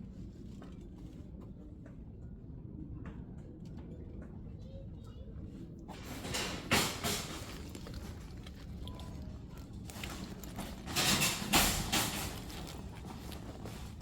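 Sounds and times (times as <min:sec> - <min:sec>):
rustling handling noise: 0:05.9 - 0:14.0.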